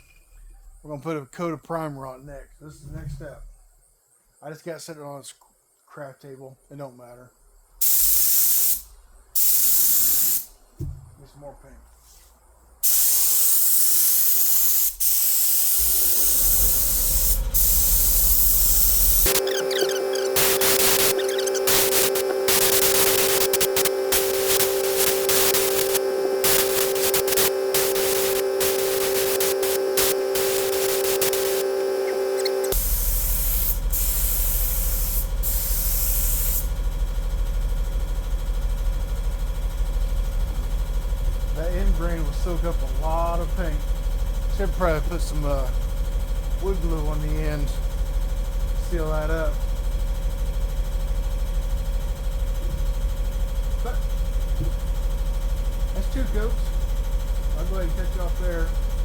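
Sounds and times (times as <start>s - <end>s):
spray hissing: 7.8s - 8.8s, 9.4s - 10.5s, 12.8s - 36.7s.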